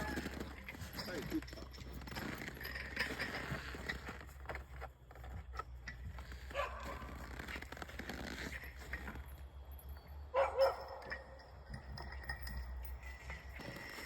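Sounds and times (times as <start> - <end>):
dogs barking and yelping: 6.5 - 7.1, 10.3 - 11.3.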